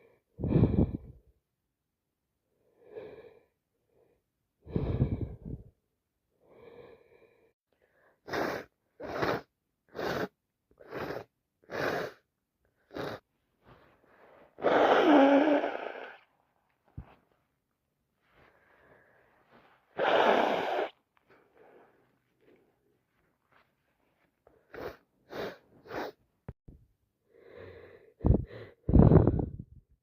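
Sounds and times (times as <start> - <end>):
woman breathing heavily: 0.4 - 1.2, 4.7 - 5.7, 18.2 - 26.2, 27.3 - 29.7
sniff: 7.9 - 16.2, 18.2 - 22.1, 24.5 - 26.2.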